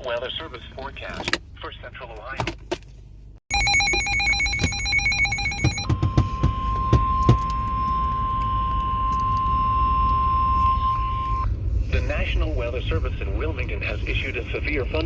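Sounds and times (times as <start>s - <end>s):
low rumble: 6.0s - 15.0s.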